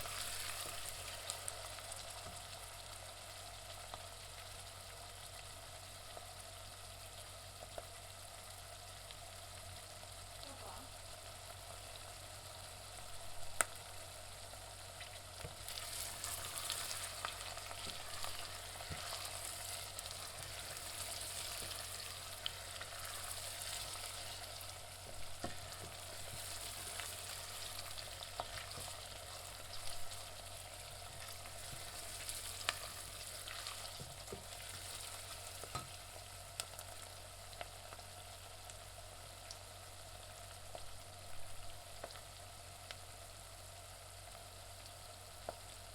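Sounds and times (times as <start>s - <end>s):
onions being stirred: 0.0s - 2.7s, 14.9s - 37.2s
onions sizzling in a pan: 0.0s - 45.9s.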